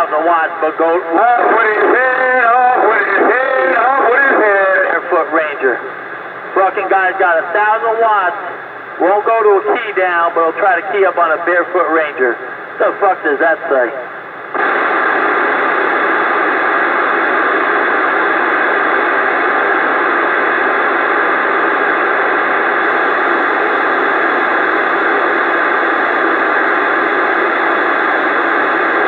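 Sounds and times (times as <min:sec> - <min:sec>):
radio static hiss: 0:00.0 - 0:29.0.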